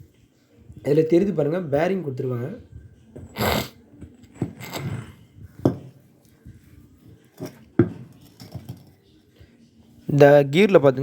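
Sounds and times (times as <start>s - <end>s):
scraping rub: 3.2s - 5.2s.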